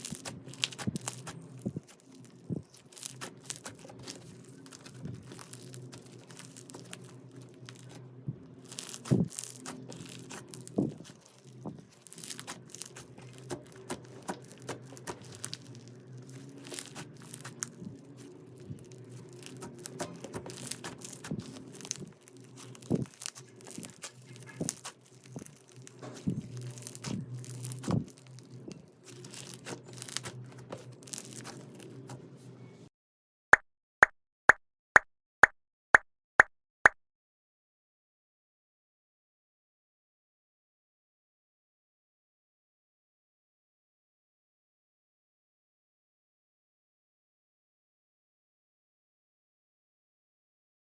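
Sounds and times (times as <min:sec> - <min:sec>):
slime squelching and popping: 0:00.0 - 0:08.0, 0:08.6 - 0:31.8.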